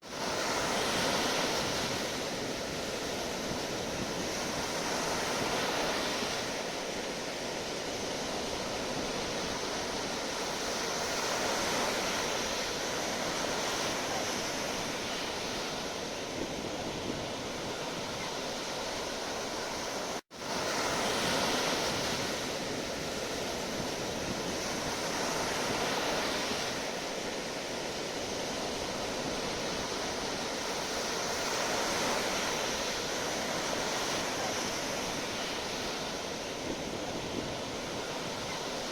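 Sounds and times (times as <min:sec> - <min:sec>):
sea waves washing onto shore: 0:00.0 - 0:38.9.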